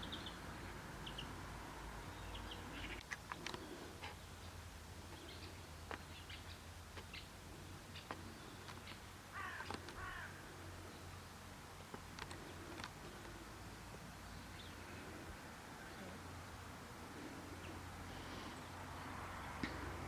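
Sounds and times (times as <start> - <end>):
sharp animal clicks: 2.9 - 4.2, 5.1 - 10.2, 11.8 - 13.4.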